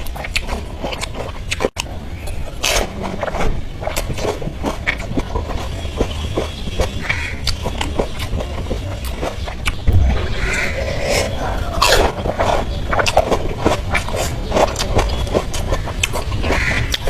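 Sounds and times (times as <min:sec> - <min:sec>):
crunching and chewing food: 0:00.0 - 0:17.0
low hum: 0:07.4 - 0:16.0.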